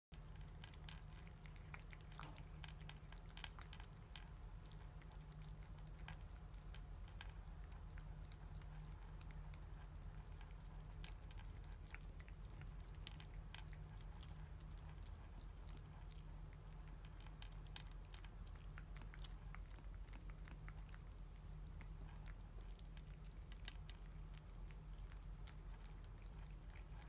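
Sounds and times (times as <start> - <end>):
cats licking wet clicks: 0.1 - 27.0
steady low hum: 0.1 - 27.0.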